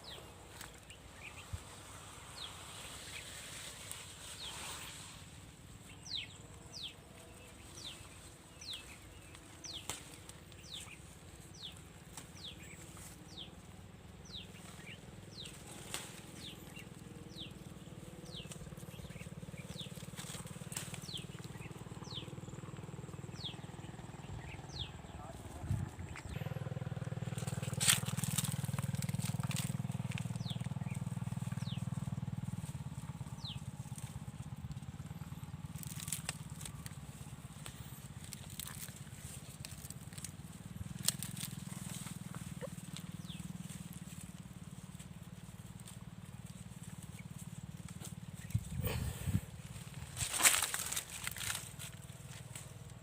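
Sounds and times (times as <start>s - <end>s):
bird chirping: 5.8s - 11.8s, 14.2s - 26.6s, 41.0s - 44.0s.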